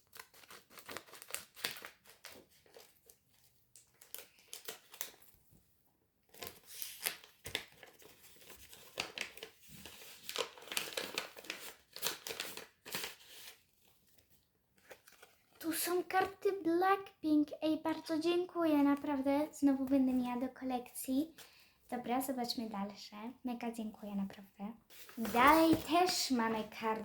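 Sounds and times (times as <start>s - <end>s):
wrapper tearing and crinkling: 0.0s - 3.2s, 3.8s - 5.3s, 6.3s - 13.6s.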